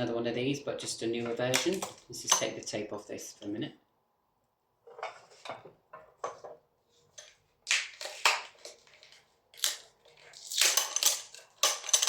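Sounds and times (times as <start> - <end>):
adhesive tape being peeled off: 7.7 - 11.5.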